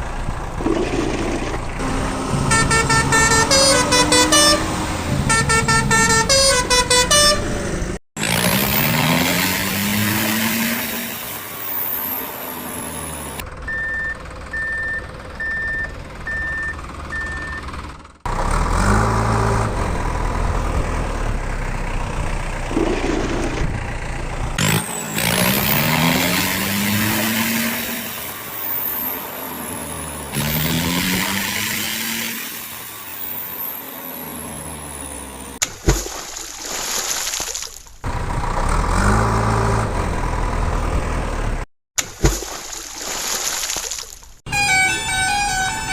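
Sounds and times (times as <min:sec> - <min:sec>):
low engine rumble: 0:00.0 - 0:03.8
heavy vehicle engine revving: 0:00.0 - 0:15.4, 0:16.0 - 0:35.6, 0:38.0 - 0:41.7
reversing alarm beeping: 0:13.7 - 0:17.7, 0:44.5 - 0:45.9.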